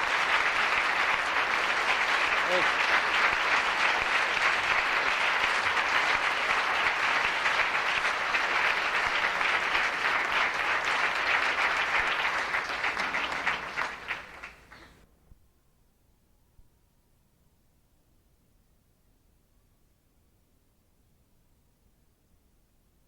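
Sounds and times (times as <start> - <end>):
audience applauding: 0.0 - 15.0.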